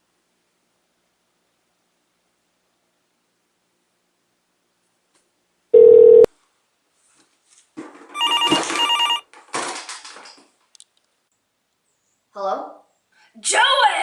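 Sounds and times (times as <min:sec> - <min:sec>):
short steady beep: 0:05.8 - 0:06.3
telephone ringing: 0:05.8 - 0:06.3, 0:08.2 - 0:09.2.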